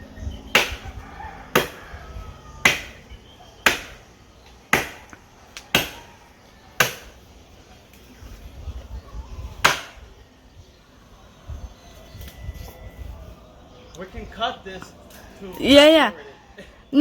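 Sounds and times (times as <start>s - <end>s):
machete chopping tree trunk: 0.5s - 1.8s, 2.6s - 4.1s, 4.7s - 6.1s, 6.8s - 7.2s, 9.6s - 10.0s.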